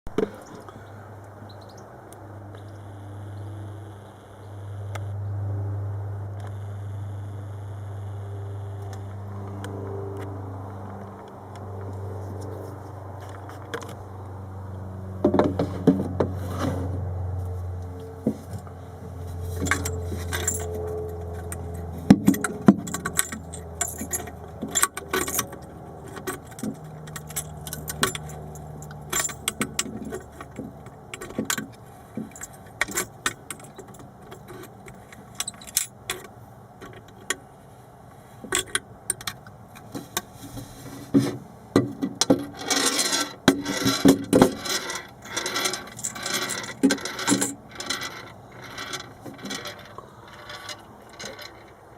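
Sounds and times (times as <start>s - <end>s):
steady low hum: 0.1s - 41.8s
pliers clinking on metal: 19.6s - 36.2s, 42.6s - 49.8s.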